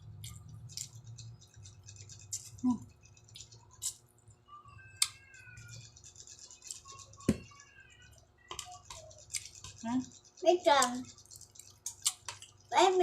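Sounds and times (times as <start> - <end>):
crunching while eating: 11.1 - 12.6.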